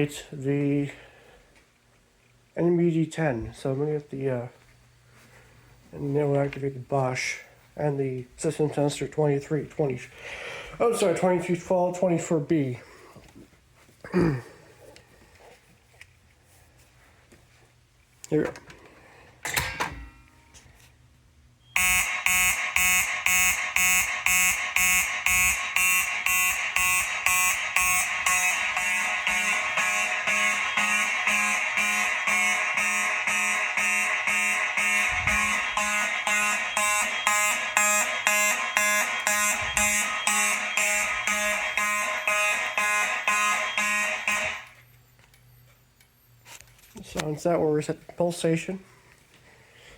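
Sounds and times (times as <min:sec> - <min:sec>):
pulsing fire alarm: 0:21.7 - 0:46.6.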